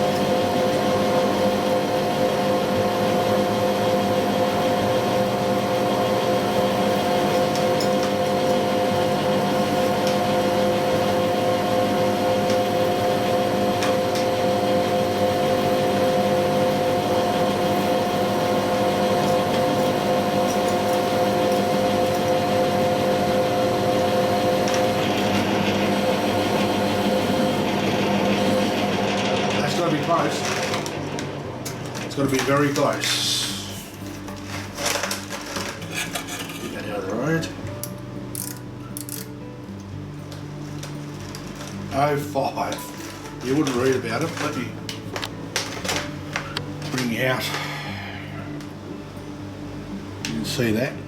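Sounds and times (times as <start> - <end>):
metal lathe whining: 0.0 - 34.4.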